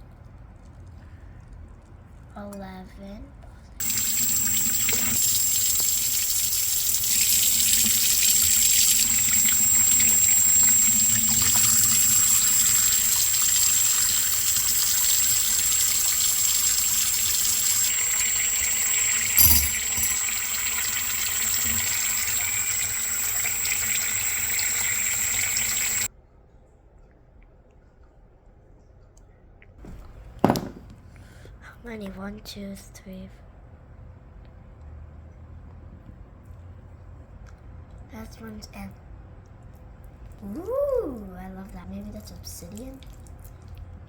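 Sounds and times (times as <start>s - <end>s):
tap water running into sink: 3.8s - 26.1s
knock: 30.4s - 30.9s.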